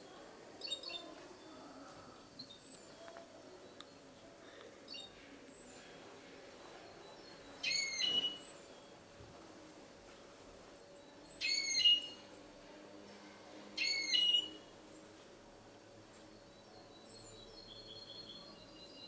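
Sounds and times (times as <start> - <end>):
faint bird twittering: 4.9 - 5.8, 6.8 - 8.9, 11.0 - 12.3
bird singing ringing phrases: 7.1 - 8.5, 11.4 - 12.3, 13.8 - 14.6, 16.3 - 19.0.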